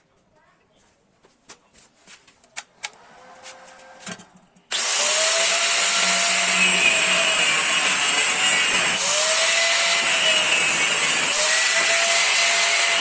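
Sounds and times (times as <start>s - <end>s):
power tool on metal pipe: 4.7s - 13.0s.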